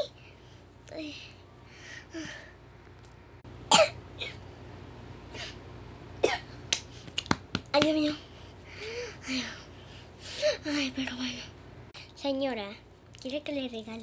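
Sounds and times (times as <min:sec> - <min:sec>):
child coughing: 0:03.7 - 0:04.4, 0:06.2 - 0:06.5.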